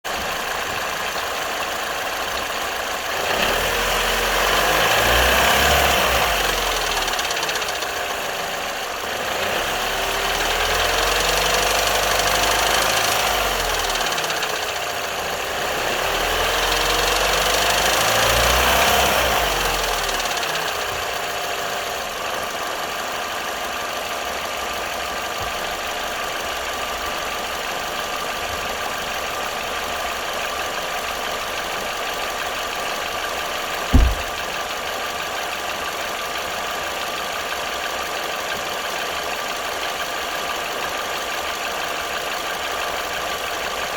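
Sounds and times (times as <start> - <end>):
car engine running: 0.1 - 23.4, 30.3 - 34.7
engine rattling knocking noise: 0.1 - 43.9.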